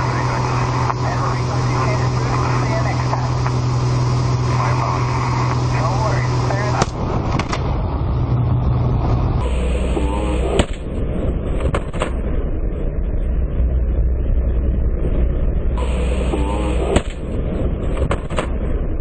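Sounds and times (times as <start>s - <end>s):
propeller plane engine droning: 0.0s - 19.0s
sharp clicks: 16.3s - 17.2s, 18.0s - 18.6s.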